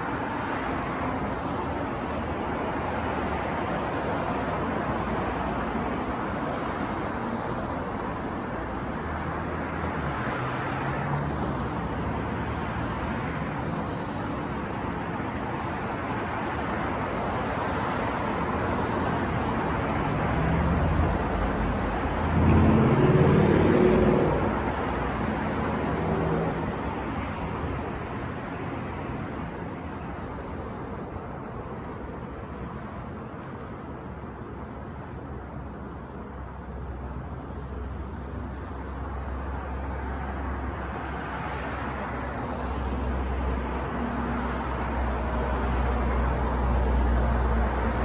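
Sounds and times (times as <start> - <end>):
street traffic: 0.0 - 48.0
heavy vehicle passing close: 19.7 - 27.8.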